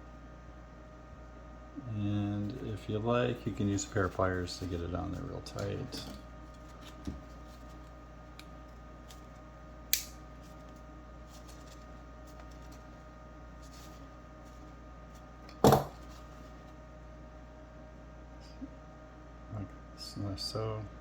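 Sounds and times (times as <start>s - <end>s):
steady low hum: 0.0s - 21.0s
plastic snap: 9.9s - 10.2s
pliers knocking on plastic: 15.5s - 16.0s.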